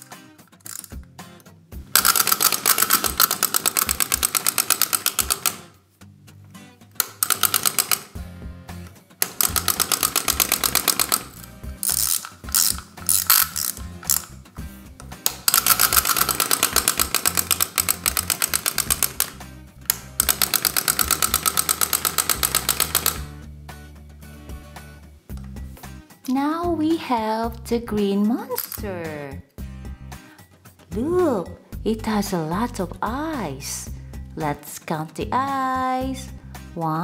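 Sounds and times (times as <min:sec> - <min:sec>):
clockwork toy clattering: 0:01.9 - 0:05.7, 0:07.0 - 0:08.2, 0:09.2 - 0:14.4, 0:15.3 - 0:23.3.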